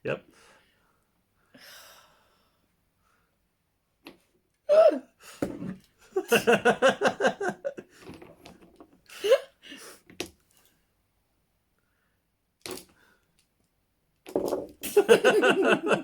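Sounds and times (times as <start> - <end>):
person laughing: 6.1 - 7.8, 14.8 - 16.0.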